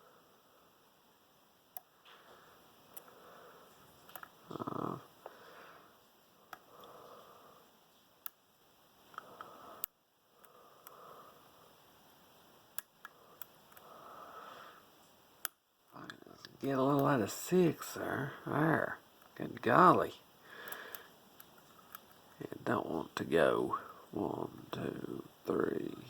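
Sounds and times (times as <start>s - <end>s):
soft breathing: 1.9s - 8.0s, 9.1s - 12.0s, 13.1s - 15.1s, 20.4s - 21.9s.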